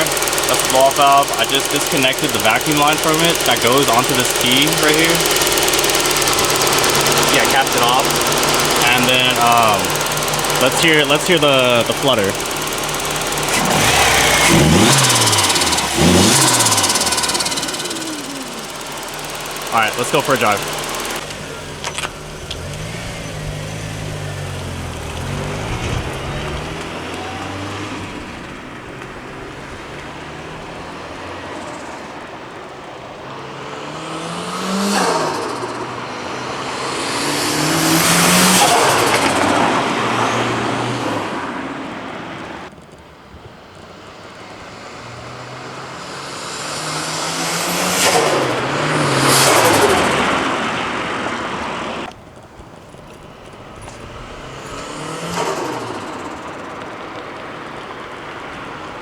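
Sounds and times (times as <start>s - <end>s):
turbo flutter: 0.0s - 28.6s
turbocharged car engine revving: 0.0s - 42.7s, 44.4s - 59.0s.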